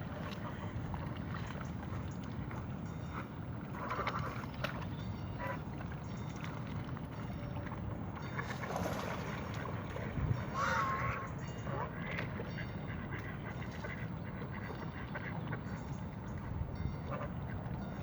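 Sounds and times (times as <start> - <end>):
waterfowl calling: 8.2 - 18.0.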